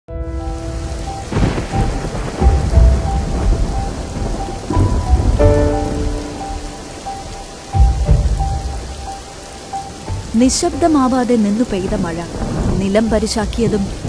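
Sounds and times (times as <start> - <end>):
soft music with held notes: 0.1 - 11.3
heavy rain: 0.1 - 14.0
rolling thunder: 0.2 - 14.0.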